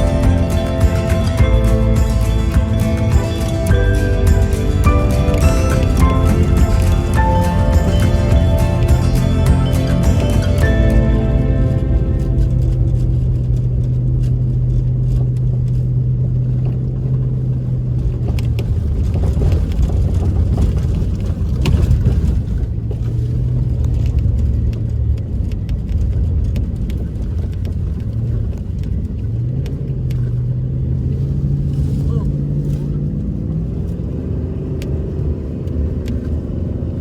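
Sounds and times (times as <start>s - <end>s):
low engine drone: 0.0s - 17.9s
road noise: 0.0s - 37.0s.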